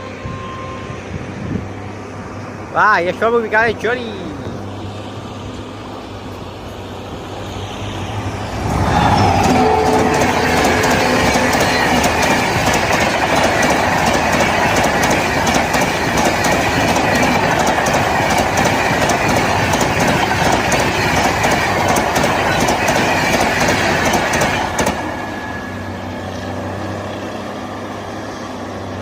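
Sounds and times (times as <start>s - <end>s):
faint train rumble: 0.0s - 29.0s
train wheels clattering over rail joints: 8.9s - 25.2s.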